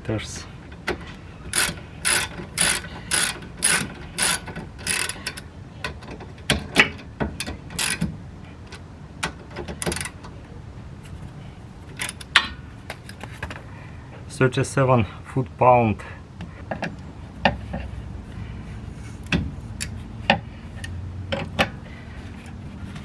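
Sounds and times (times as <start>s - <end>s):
socket ratchet clicking: 1.5s - 5.4s, 7.4s - 8.1s.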